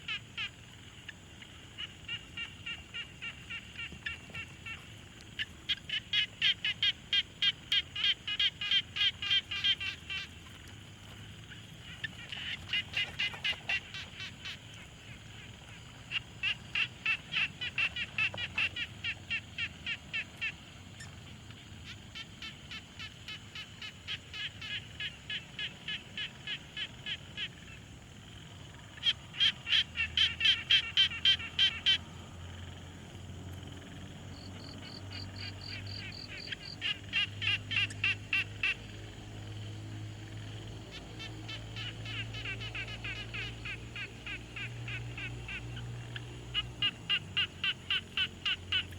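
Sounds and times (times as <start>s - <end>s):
frogs croaking: 0.0s - 48.9s
higher-pitched pulsed frog call: 5.4s - 10.4s, 11.5s - 21.2s, 28.9s - 32.6s, 34.3s - 48.9s.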